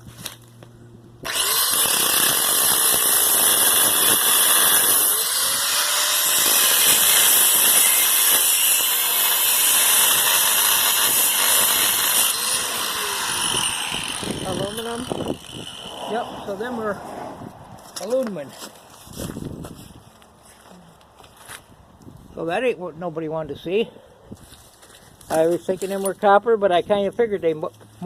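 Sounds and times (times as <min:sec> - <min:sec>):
power tool cutting motor windings: 0:01.2 - 0:16.9.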